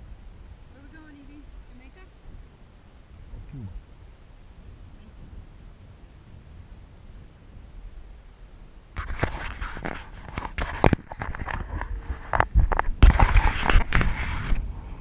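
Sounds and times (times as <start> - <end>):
faint low rumble: 0.0 - 9.0
scraping and knocking: 9.0 - 14.6.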